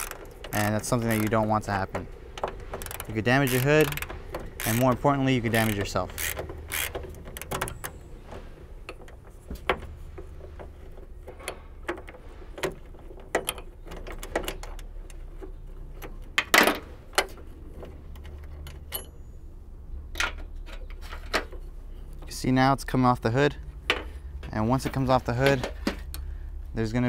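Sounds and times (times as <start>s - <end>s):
ratchet clicking: 0.0s - 1.4s, 2.6s - 8.0s.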